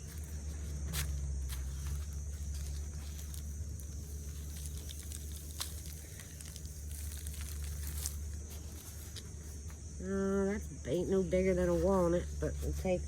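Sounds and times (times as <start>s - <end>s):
hands rummaging through dry soil: 0.0s - 9.9s
high insect chirring: 0.0s - 13.0s
low steady rumble: 0.0s - 13.0s.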